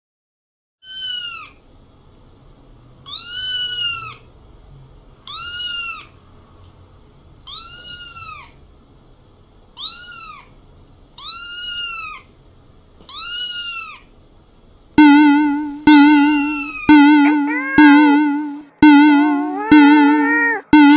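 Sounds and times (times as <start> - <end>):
cat meowing: 7.5 - 8.5, 16.4 - 18.6, 19.2 - 20.8.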